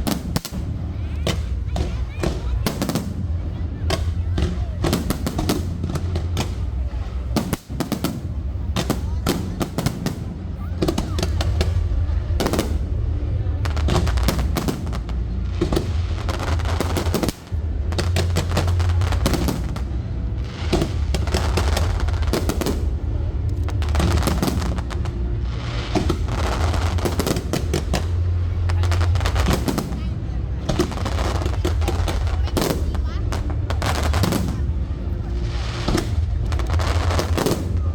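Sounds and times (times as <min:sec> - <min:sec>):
fireworks bangs and crackles: 0:00.0 - 0:37.9
music with heavy bass: 0:10.7 - 0:37.9.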